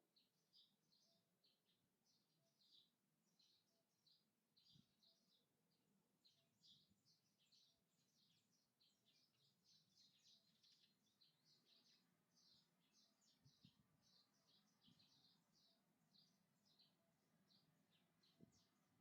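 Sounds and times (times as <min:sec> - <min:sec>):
small birds chirping: 0:00.0 - 0:19.0.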